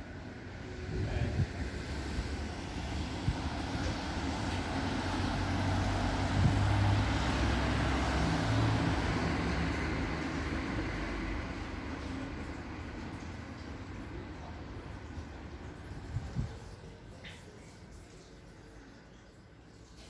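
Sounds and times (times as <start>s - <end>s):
vehicle passing by: 0.3s - 12.9s.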